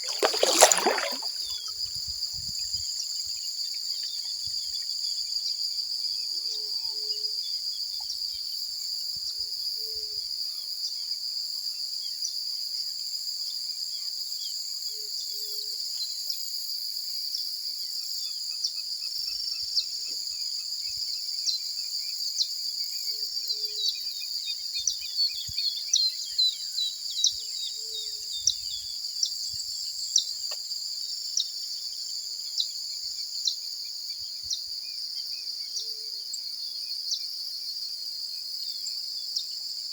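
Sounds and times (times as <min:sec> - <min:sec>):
insects trilling: 0:00.0 - 0:01.8.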